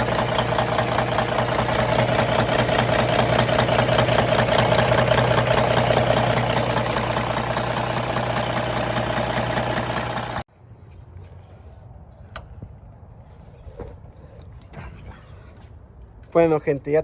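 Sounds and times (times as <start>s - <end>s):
diesel truck engine idling: 0.0s - 10.5s.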